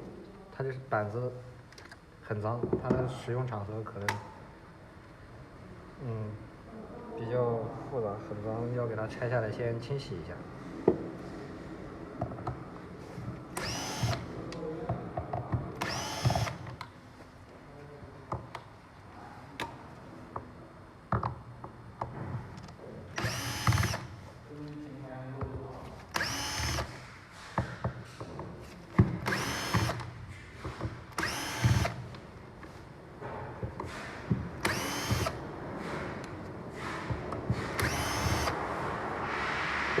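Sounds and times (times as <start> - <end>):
electric screwdriver whining: 13.6 - 14.3, 15.8 - 16.8, 23.2 - 24.1, 26.1 - 27.0, 29.2 - 30.1, 31.2 - 32.0, 34.6 - 35.4, 37.7 - 38.6.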